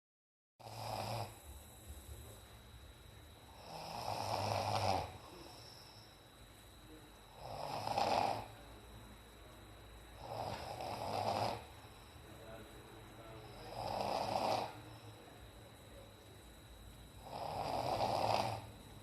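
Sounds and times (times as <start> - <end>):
man snoring: 0.6 - 1.6, 3.5 - 6.0, 7.3 - 8.6, 10.2 - 11.8, 13.4 - 15.2, 17.2 - 18.9
quiet breathing: 0.6 - 19.0.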